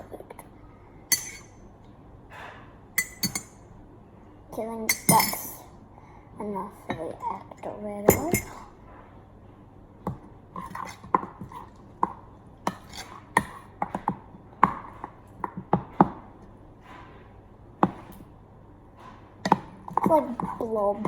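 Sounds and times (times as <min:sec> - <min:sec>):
spoon tapping against bowl: 0:03.0 - 0:03.6.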